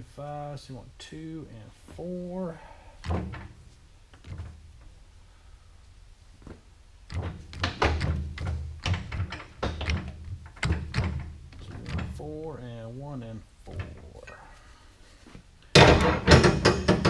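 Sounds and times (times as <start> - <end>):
lathe gear levers clunking: 3.0 - 4.6, 7.1 - 12.4, 13.7 - 14.4, 15.7 - 17.0.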